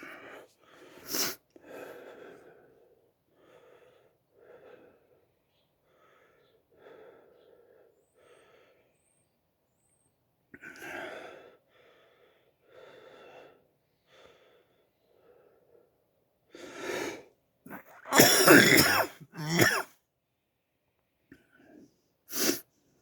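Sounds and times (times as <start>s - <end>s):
man breathing heavily: 0.0s - 8.9s, 10.8s - 17.2s
man coughing: 17.7s - 19.9s.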